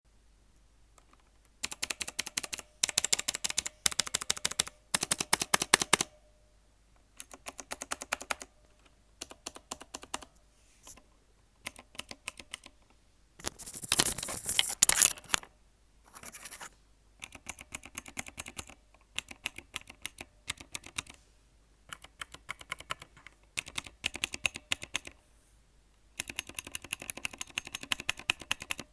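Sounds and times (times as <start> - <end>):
mechanical keyboard typing: 1.0 - 6.2, 7.2 - 8.5, 9.2 - 10.3, 11.6 - 12.8, 13.4 - 15.4, 16.1 - 21.2, 21.9 - 25.2, 26.2 - 28.9.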